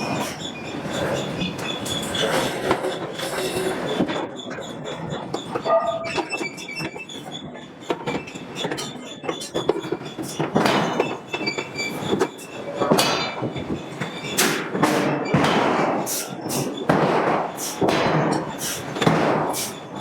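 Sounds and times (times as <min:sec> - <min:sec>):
thin high squeals: 0:00.0 - 0:12.8.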